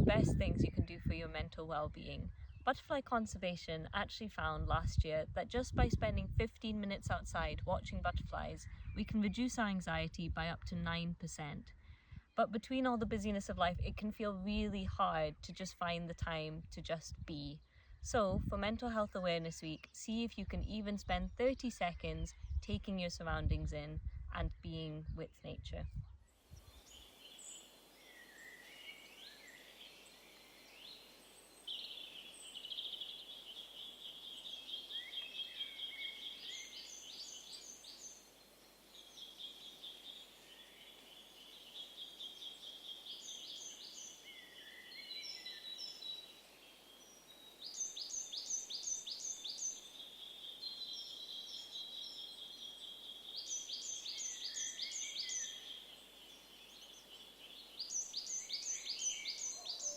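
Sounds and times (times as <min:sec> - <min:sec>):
bird singing rapid trills: 0:26.2 - 0:59.9.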